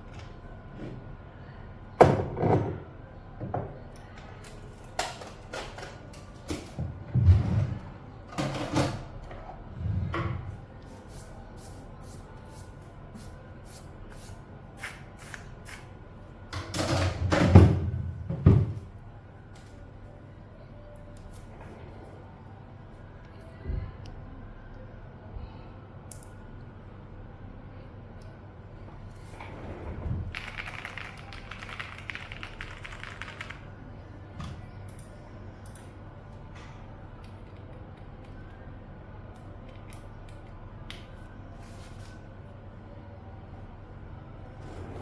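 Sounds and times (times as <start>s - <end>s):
typing on mechanical keyboard: 30.4s - 33.6s.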